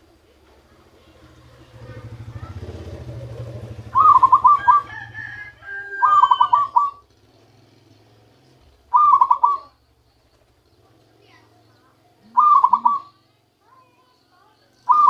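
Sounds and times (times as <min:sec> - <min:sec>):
dove cooing: 0:00.8 - 0:07.1, 0:08.6 - 0:11.5, 0:12.1 - 0:13.3.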